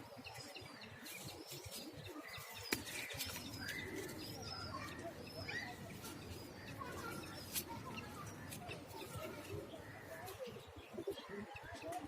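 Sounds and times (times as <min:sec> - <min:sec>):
birds chirping: 0:00.0 - 0:12.0.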